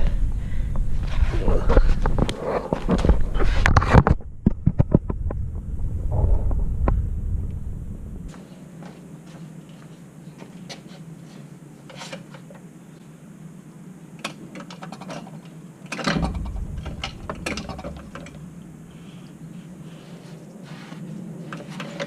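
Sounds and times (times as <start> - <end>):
metallic knock: 16.1 - 19.1.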